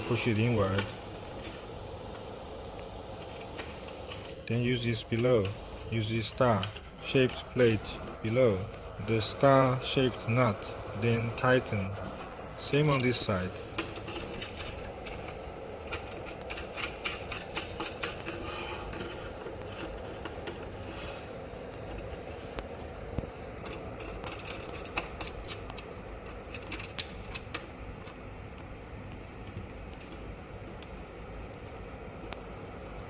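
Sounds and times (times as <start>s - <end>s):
steady low hum: 0.0s - 33.0s
metallic clicks and rattles: 12.7s - 18.4s, 23.6s - 28.2s.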